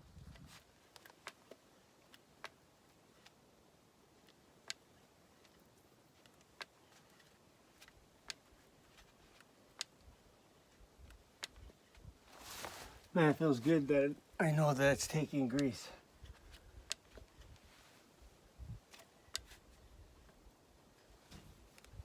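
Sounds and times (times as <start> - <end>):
grease gun clicks: 11.0 - 12.0.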